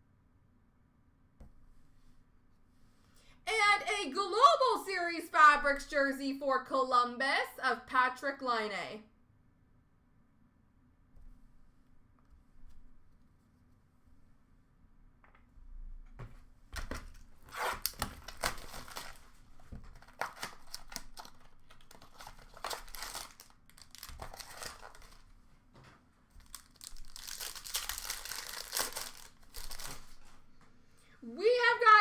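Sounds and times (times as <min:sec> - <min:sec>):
card wrappers torn and crinkled: 0:16.8 - 0:25.4, 0:26.4 - 0:30.4.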